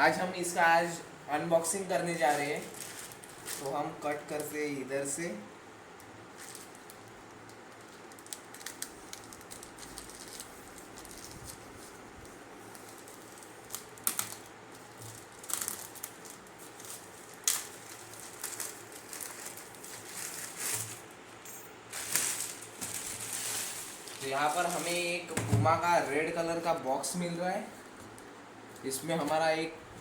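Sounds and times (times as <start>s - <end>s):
packaging snipping and crinkling: 6.3s - 12.0s, 12.7s - 21.1s.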